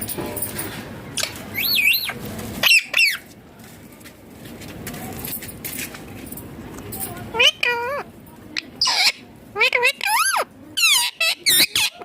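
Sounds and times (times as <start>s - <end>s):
parakeet squawks: 8.8s - 12.0s.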